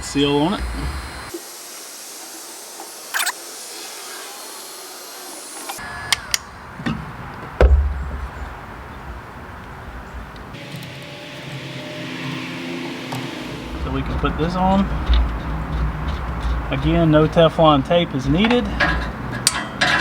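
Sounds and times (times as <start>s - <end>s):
heat gun blowing hot air: 0.0s - 6.4s
loud thump of tools: 7.6s - 8.3s.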